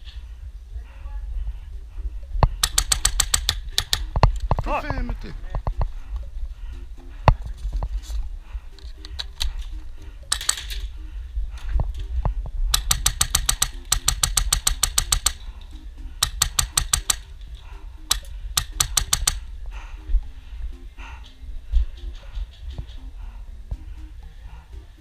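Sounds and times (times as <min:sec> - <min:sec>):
airsoft gun full-auto bursts: 0:02.6 - 0:04.0, 0:12.7 - 0:15.4, 0:16.2 - 0:17.2, 0:18.1 - 0:19.4.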